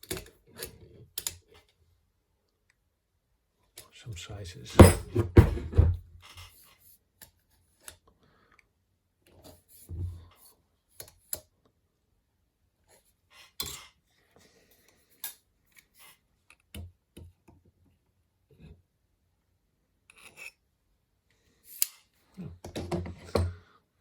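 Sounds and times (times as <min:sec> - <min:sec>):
dull thumps of chuck set down: 0:04.8 - 0:06.0.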